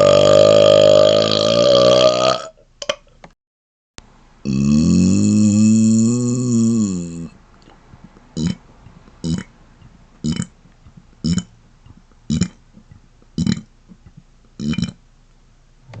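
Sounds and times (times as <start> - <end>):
person burping: 0.0 - 2.6, 4.4 - 7.4, 8.4 - 8.6, 9.2 - 9.5, 10.2 - 10.5, 11.2 - 11.5, 12.3 - 12.6, 13.4 - 13.7, 14.6 - 15.0.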